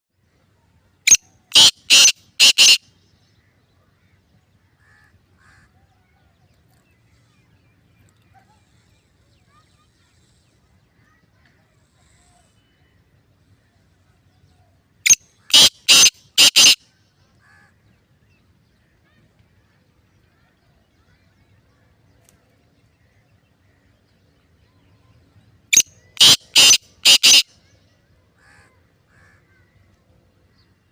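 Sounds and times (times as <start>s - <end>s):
bird calling harsh notes: 1.1s - 2.8s, 15.1s - 16.8s, 25.7s - 27.5s.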